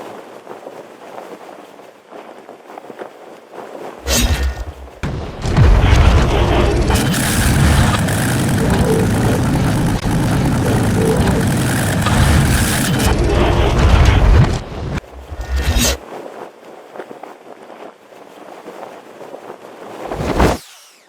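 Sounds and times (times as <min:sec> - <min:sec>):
booming mechanical noise: 0:04.0 - 0:16.0
heavy low rumble: 0:04.0 - 0:16.0
sudden loud hit: 0:04.1 - 0:15.6.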